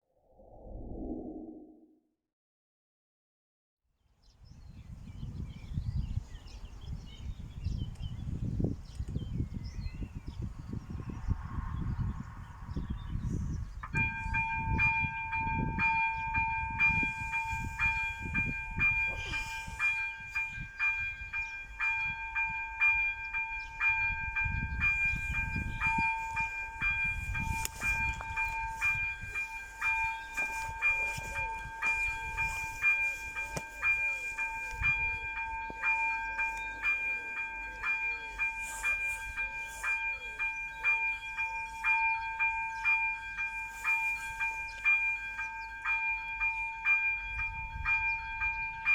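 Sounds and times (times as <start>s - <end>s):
level-crossing bell ringing: 14.0s - 48.9s.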